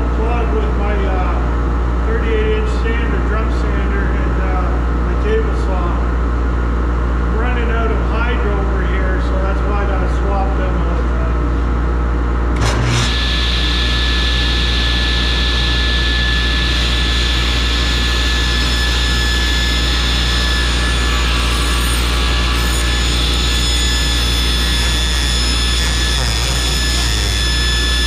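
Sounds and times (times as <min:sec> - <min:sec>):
dust collector running: 0:12.5 - 0:28.0
table saw ripping wood: 0:12.6 - 0:28.0.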